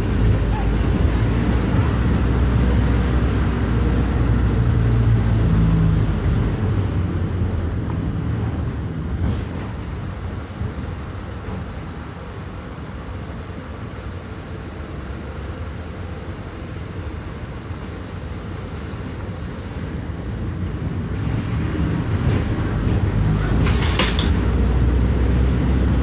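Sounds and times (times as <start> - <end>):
bus diesel engine running: 0.0 - 26.0
road noise: 0.0 - 26.0
faint high squeal: 11.5 - 12.7.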